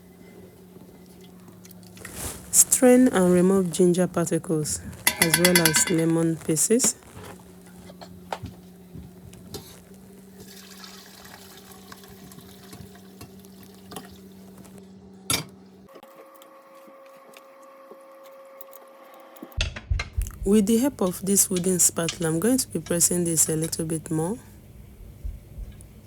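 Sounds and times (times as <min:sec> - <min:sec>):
faint steady hum: 0:00.0 - 0:18.7, 0:19.9 - 0:26.0
kitchen utensils clinking: 0:04.9 - 0:07.0
tea dripping through a strainer: 0:10.0 - 0:14.8.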